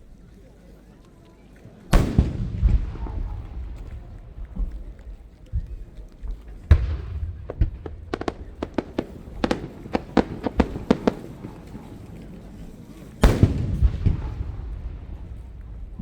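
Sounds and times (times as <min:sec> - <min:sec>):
firework crackling pops: 0:01.9 - 0:16.0
firework deep boom: 0:02.0 - 0:11.8, 0:13.2 - 0:16.0.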